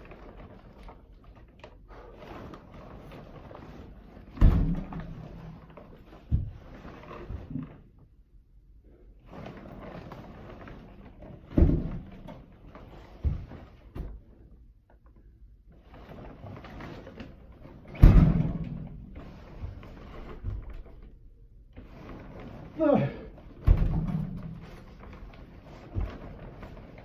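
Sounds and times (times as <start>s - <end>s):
tarp rustling: 0.0s - 7.5s, 21.8s - 27.0s.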